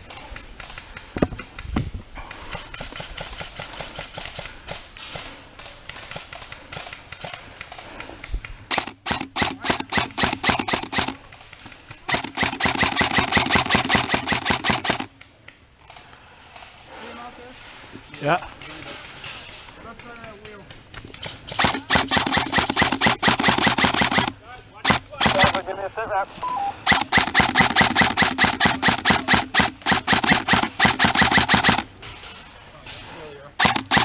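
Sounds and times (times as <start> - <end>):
airsoft gun rapid bursts: 8.7 - 11.2, 12.1 - 15.1, 21.5 - 25.6, 26.8 - 31.9, 33.6 - 34.0.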